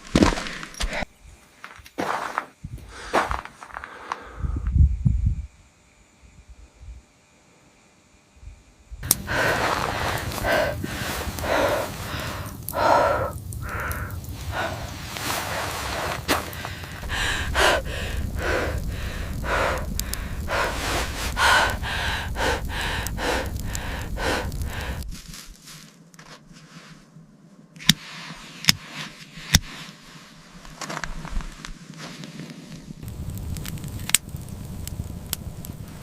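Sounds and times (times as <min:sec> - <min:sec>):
low wind rumble: 0:02.5 - 0:07.2, 0:08.3 - 0:25.8, 0:28.6 - 0:36.0
heavy breathing and gasps: 0:16.3 - 0:25.1.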